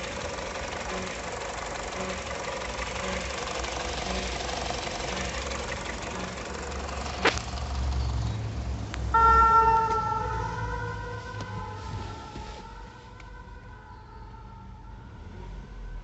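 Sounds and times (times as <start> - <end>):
car engine idling: 0.0 - 16.0
loud steady pitched tone: 9.1 - 12.9
soft rhythmic rubbing noise: 10.8 - 13.2.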